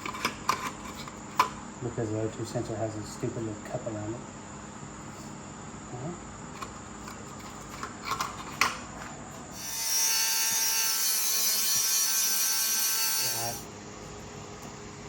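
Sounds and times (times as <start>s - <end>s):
power tool whining: 9.5s - 13.7s.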